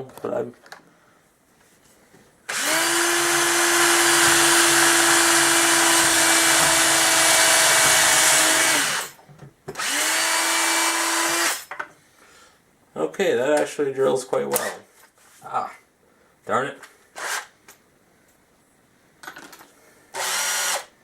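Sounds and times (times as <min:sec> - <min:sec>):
cordless drill whining: 0:02.5 - 0:09.2, 0:09.8 - 0:11.7, 0:20.1 - 0:20.9.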